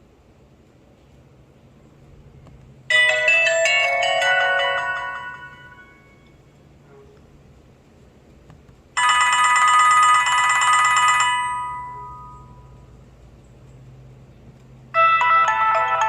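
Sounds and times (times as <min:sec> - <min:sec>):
phone ringtone melodies: 0:02.9 - 0:06.3, 0:09.0 - 0:12.7, 0:15.0 - 0:16.0.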